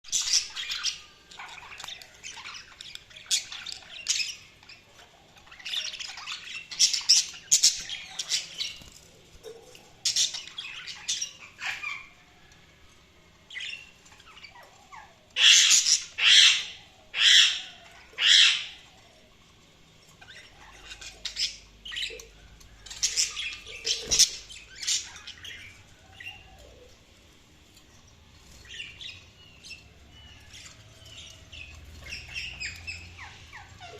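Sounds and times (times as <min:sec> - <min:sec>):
bird squawking and chirping: 0:10.1 - 0:12.2, 0:13.6 - 0:19.0.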